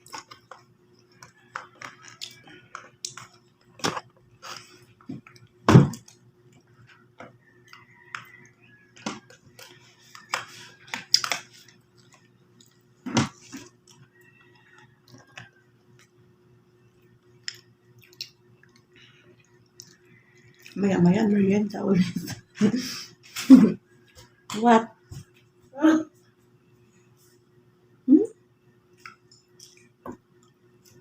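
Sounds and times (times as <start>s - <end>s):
chewing: 0.0s - 16.1s, 17.4s - 20.8s, 28.9s - 31.0s
faint steady hum: 0.0s - 31.0s.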